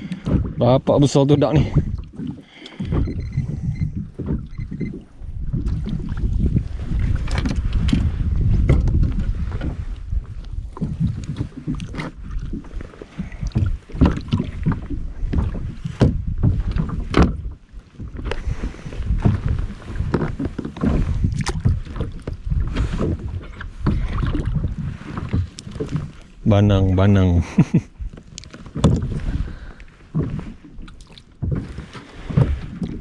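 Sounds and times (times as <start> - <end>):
wind rumble on microphone: 0.0 - 33.0
knocks and taps on plastic kayak: 7.3 - 9.8, 13.2 - 17.5, 28.7 - 29.2.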